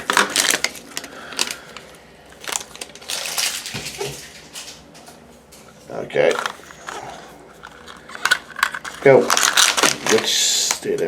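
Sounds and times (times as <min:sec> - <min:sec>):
package being torn open: 0:00.0 - 0:04.1, 0:06.3 - 0:10.8.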